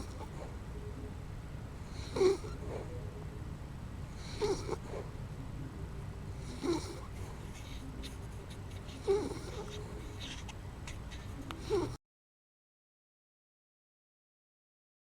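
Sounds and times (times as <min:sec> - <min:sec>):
dog snoring: 0:00.0 - 0:00.6, 0:01.8 - 0:03.0, 0:04.1 - 0:05.2, 0:06.3 - 0:07.8, 0:08.8 - 0:10.4, 0:11.6 - 0:12.0
low steady background rumble: 0:00.0 - 0:12.0.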